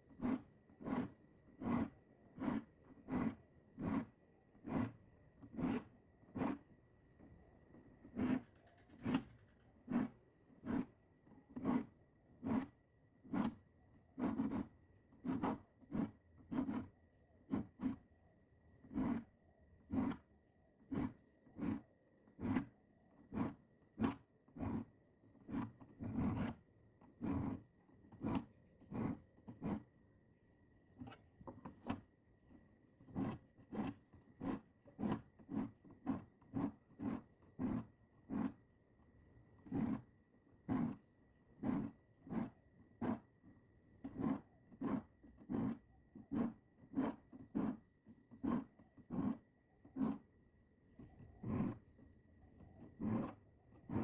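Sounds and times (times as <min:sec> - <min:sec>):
file rasping on saw teeth: 0:11.6 - 0:13.6, 0:15.3 - 0:16.9, 0:18.8 - 0:19.3, 0:44.0 - 0:47.8.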